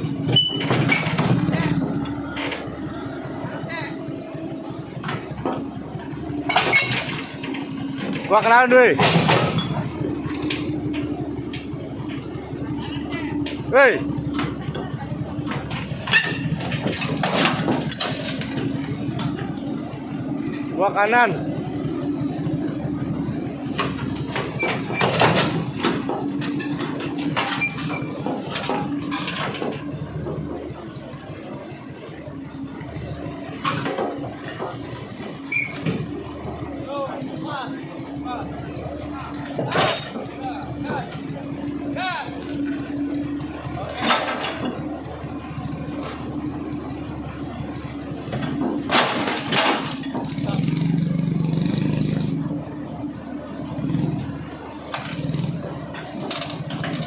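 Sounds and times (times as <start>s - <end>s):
excavator diesel engine running: 0.0s - 57.0s
steel tracks clanking and squealing: 0.0s - 57.0s.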